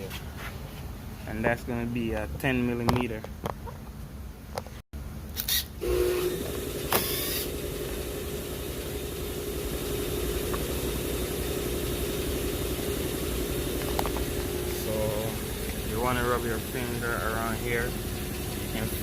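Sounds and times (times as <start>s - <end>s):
steady motor hum: 5.4s - 19.0s.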